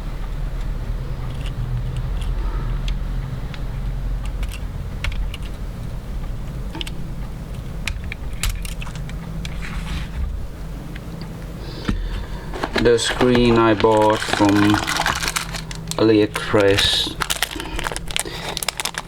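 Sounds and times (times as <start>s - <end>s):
tools clicking on camera parts: 1.2s - 3.0s.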